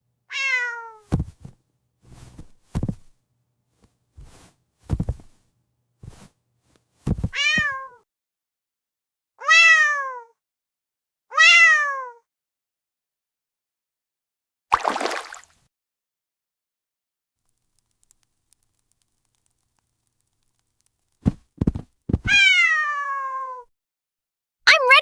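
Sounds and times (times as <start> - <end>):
cat meowing: 0.3 - 1.0, 9.4 - 10.4, 11.3 - 12.2, 22.3 - 23.7
dull thuds and knocks: 1.1 - 1.6, 2.2 - 3.1, 4.2 - 5.4, 7.0 - 7.7, 21.2 - 22.4.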